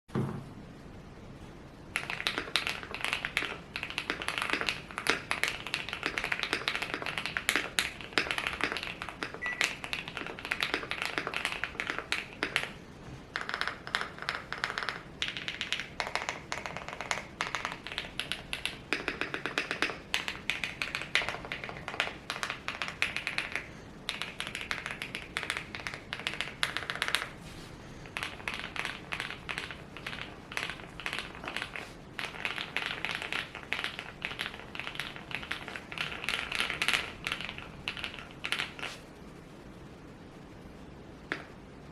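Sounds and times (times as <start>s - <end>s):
fast mechanical keyboard typing: 1.9s - 27.4s, 28.0s - 39.0s.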